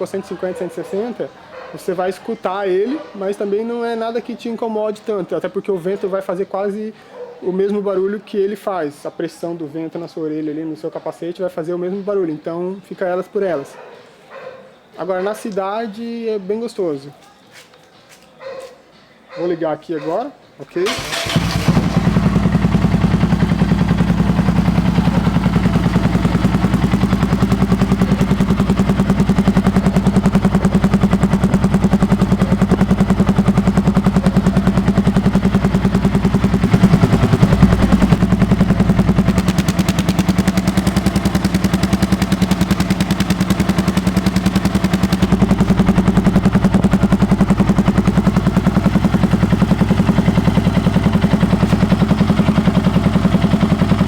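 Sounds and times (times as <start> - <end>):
motorcycle engine idling: 20.9 - 54.0.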